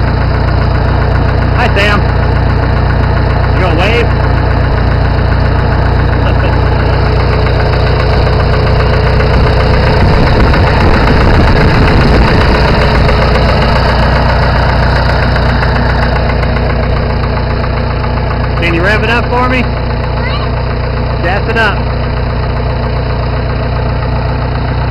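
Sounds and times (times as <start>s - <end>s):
tractor engine idling with knock: 0.0s - 24.9s.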